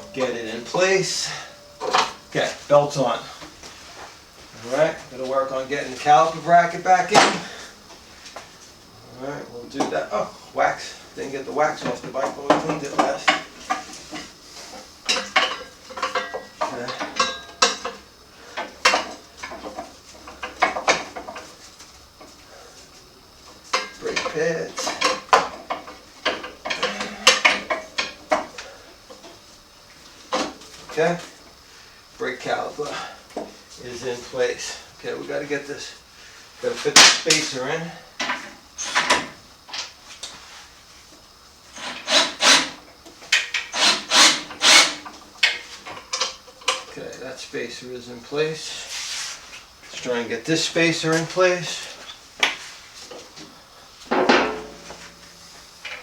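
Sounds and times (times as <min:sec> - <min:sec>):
metal spacer scraping: 0:00.0 - 0:03.3
metal parts and tools clanking: 0:00.0 - 0:03.5, 0:15.1 - 0:18.0, 0:23.7 - 0:29.3, 0:54.1 - 0:56.0.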